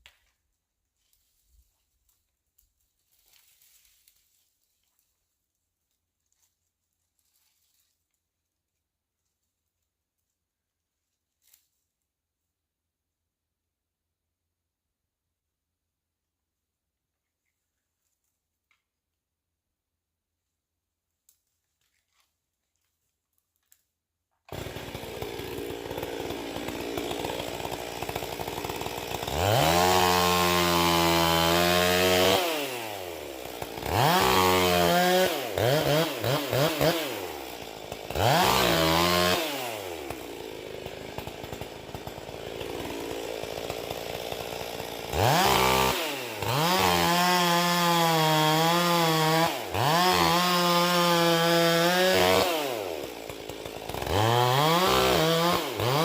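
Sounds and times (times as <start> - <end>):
chainsaw idling and revving: 24.5 - 56.0.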